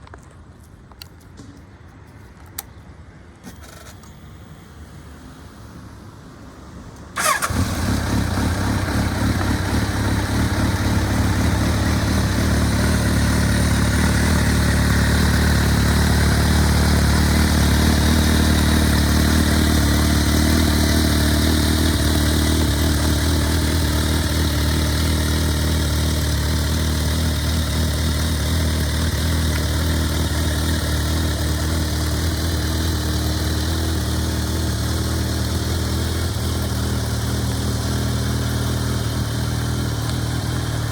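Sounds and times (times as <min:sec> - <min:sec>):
starter motor whirr: 0:03.4 - 0:04.6, 0:07.2 - 0:12.4
motorcycle engine idling: 0:07.2 - 0:40.9.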